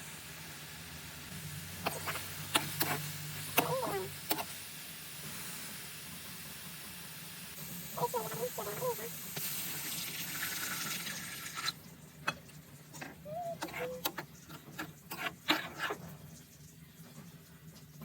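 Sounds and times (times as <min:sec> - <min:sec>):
water pouring: 0:09.5 - 0:18.0.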